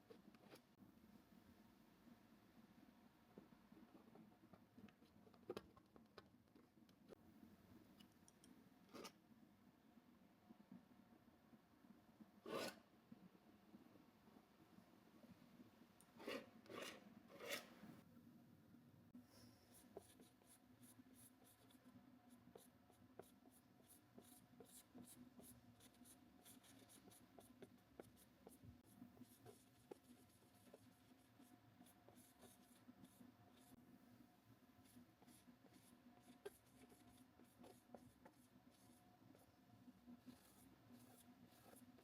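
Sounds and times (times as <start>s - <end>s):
paintbrush strokes on canvas: 34.8s - 42.0s.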